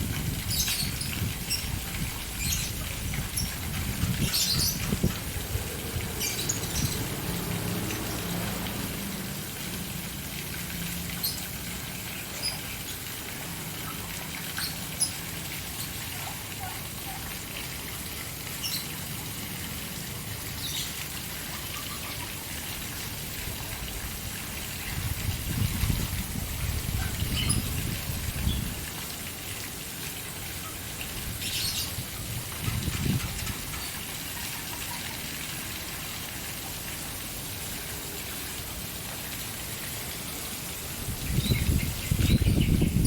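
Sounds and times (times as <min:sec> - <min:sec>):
fountain water splashing: 0:00.0 - 0:43.0.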